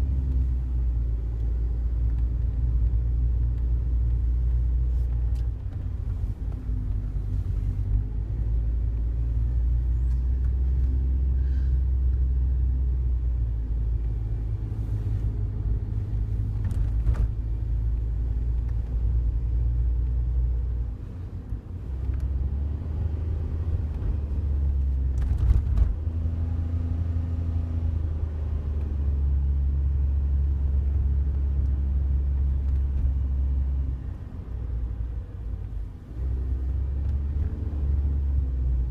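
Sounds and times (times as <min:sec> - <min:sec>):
road and engine rumble in cabin: 0:00.0 - 0:38.9.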